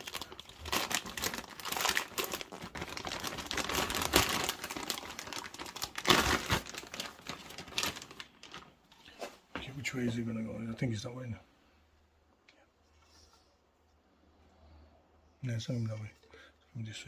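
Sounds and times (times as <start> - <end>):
plastic pipe crinkling and scraping: 0.0 - 10.2.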